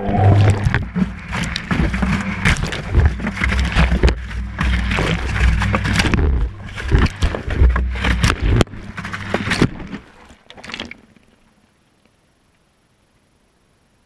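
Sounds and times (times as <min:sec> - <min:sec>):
water sloshing in washing machine: 0:00.0 - 0:10.9.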